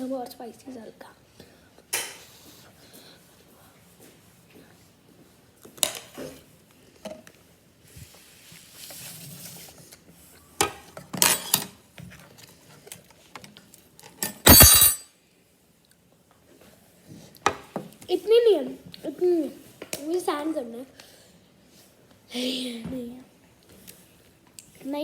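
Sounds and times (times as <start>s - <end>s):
cutlery clinking on dishes: 1.9s - 2.3s, 14.2s - 15.1s.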